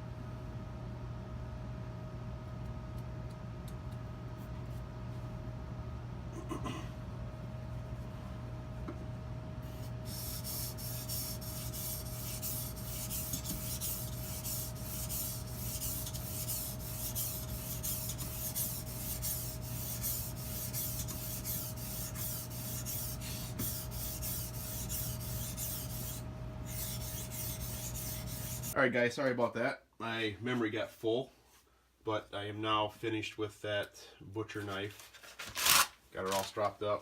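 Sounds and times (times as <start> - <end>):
sharpening stone rasping on knife: 24.0 - 28.8.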